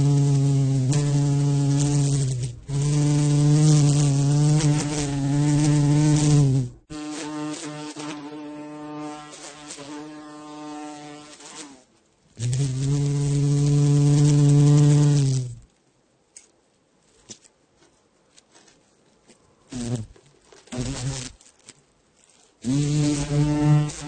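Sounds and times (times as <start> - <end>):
flying insect buzzing: 0.0 - 15.7, 19.7 - 21.4, 22.6 - 24.0.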